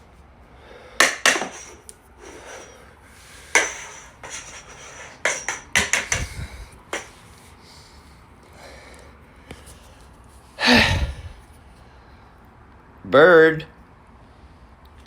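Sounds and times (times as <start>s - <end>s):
sharp knocks and clatters: 1.0s - 1.8s, 3.5s - 7.2s.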